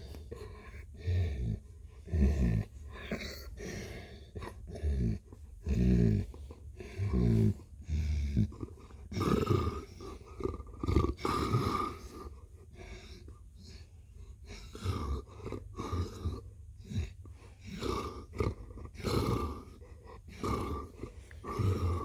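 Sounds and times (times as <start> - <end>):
cat purring: 14.4 - 22.0.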